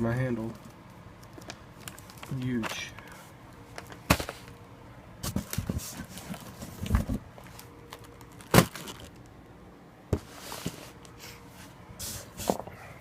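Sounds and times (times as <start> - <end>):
packages knocking and handled: 3.8 - 4.6, 5.2 - 9.3.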